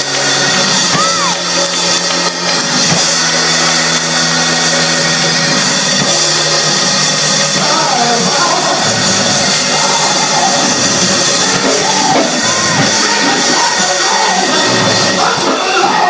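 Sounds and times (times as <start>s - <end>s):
live church music chords: 0.0s - 16.0s.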